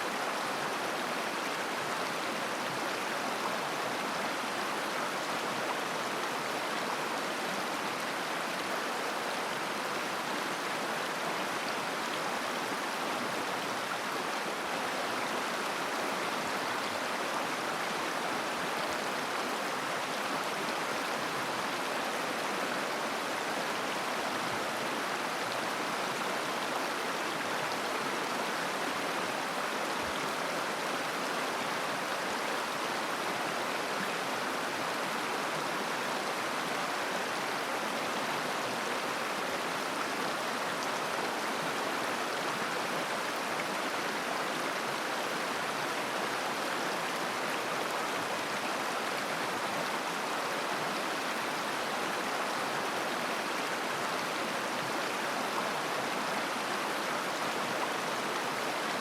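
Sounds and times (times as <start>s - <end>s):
river rushing over stones: 0.0s - 59.0s.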